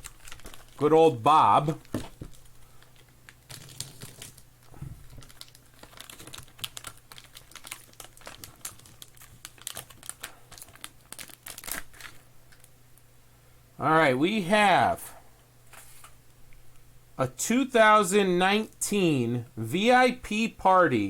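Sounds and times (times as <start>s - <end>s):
wrapper crinkling and tearing: 0.0s - 12.7s.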